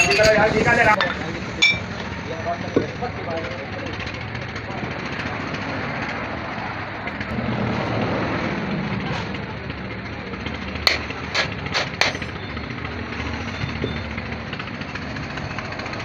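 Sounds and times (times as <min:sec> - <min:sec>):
steady background noise: 0:00.0 - 0:16.0
sharp knocks: 0:10.9 - 0:12.4.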